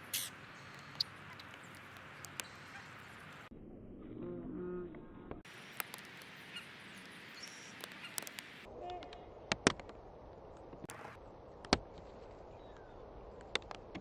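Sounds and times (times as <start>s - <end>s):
bird call: 0.0s - 3.5s, 5.5s - 9.2s
sharp taps and clicks: 7.0s - 8.6s.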